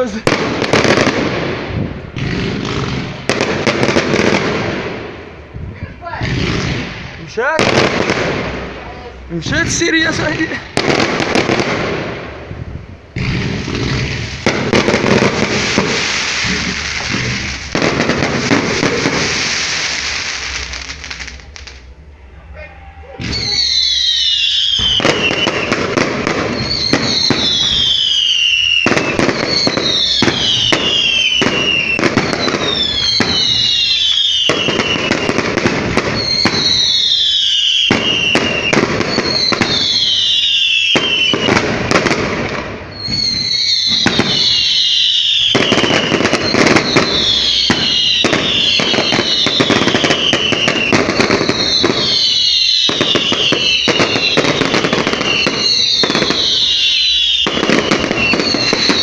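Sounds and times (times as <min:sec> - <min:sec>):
fireworks bangs and crackling: 0:00.0 - 0:22.1, 0:23.2 - 0:59.0
high falling firework whistle: 0:22.4 - 0:42.1, 0:42.9 - 0:59.0.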